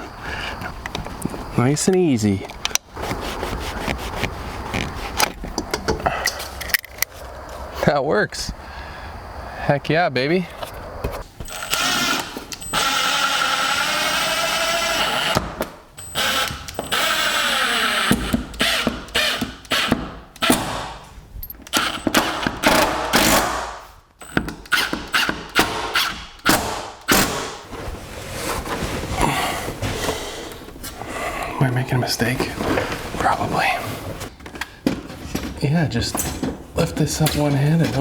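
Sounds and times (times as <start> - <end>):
tools and parts clattering: 5.0 - 7.2, 34.1 - 38.0
power drill running: 11.4 - 15.4, 16.0 - 20.0, 21.7 - 22.8.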